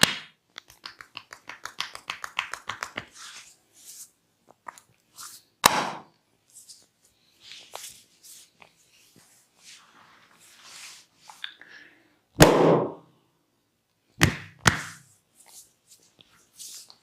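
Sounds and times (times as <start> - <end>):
hands smacking skin: 0.0 - 3.2, 14.2 - 15.0
rustling of hands and clothing: 0.6 - 5.6, 6.2 - 11.6, 14.7 - 17.0.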